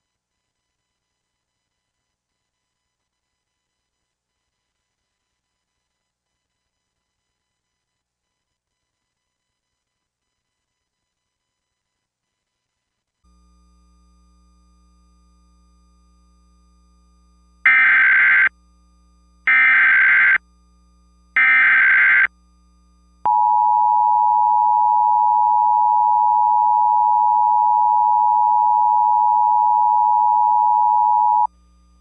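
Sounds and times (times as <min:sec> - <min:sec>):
digital data bursts: 0:17.7 - 0:18.5, 0:19.5 - 0:20.4, 0:21.4 - 0:22.3
two-tone attention signal: 0:17.7 - 0:18.5, 0:19.5 - 0:20.4, 0:21.4 - 0:22.3, 0:23.3 - 0:31.5.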